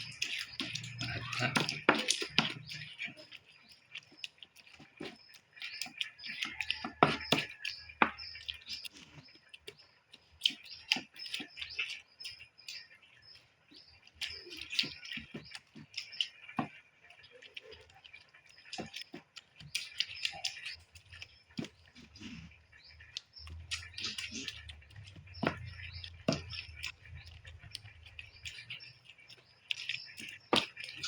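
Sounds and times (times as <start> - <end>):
birds chirping: 0.0 - 31.0.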